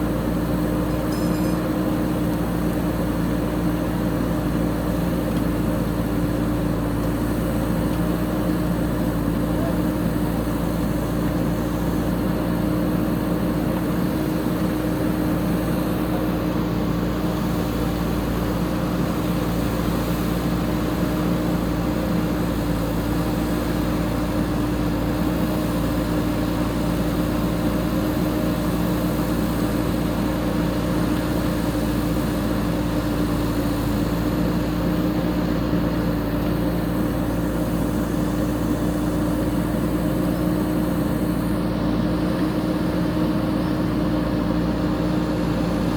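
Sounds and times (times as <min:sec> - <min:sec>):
diesel engine running: 0:00.0 - 0:45.9.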